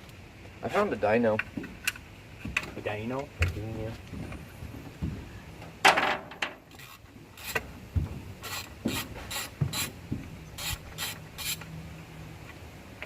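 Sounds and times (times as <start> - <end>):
hand ratchet rasping strokes: 6.7 - 7.6, 8.4 - 10.0, 10.6 - 11.7.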